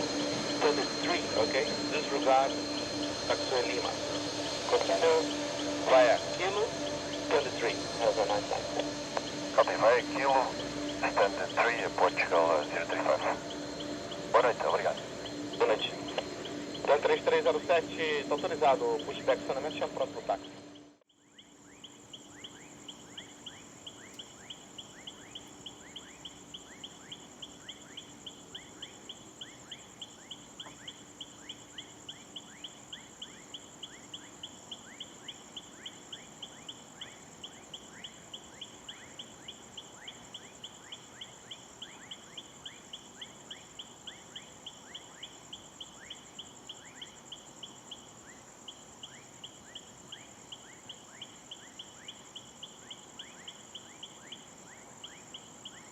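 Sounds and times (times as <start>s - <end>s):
insects trilling: 0.0s - 55.9s
pulsed insect chirp: 0.0s - 55.9s
short falling insect calls: 21.2s - 55.9s.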